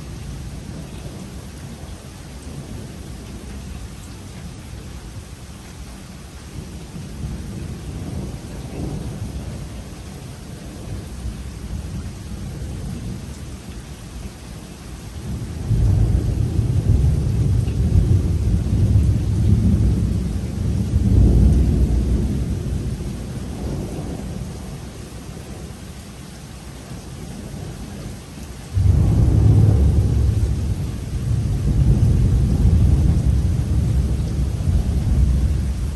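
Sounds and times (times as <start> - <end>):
steady rain: 0.0 - 35.9
thunder rumbling: 15.2 - 25.6, 28.7 - 35.9.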